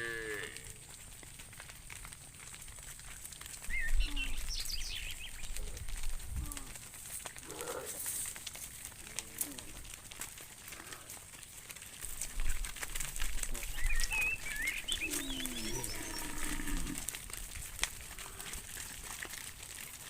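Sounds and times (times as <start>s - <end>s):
cow mooing: 0.0s - 0.8s, 15.1s - 17.1s
bird chirping: 3.7s - 5.7s, 13.6s - 16.8s.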